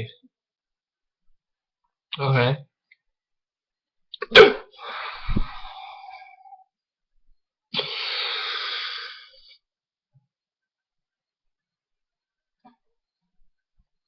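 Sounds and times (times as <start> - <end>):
person hiccuping: 4.2 - 4.7
breathy exhale: 4.8 - 6.6, 7.8 - 9.6
long deep breath: 4.8 - 6.6.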